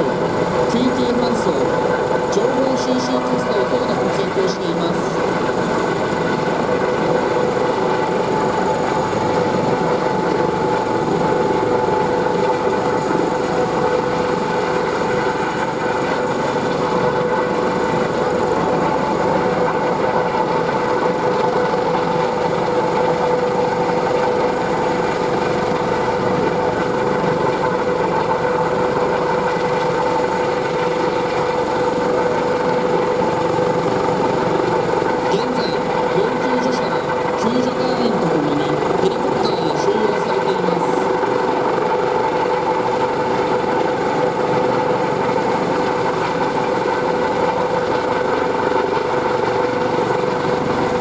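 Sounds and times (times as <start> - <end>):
helicopter hovering: 0.0 - 51.0.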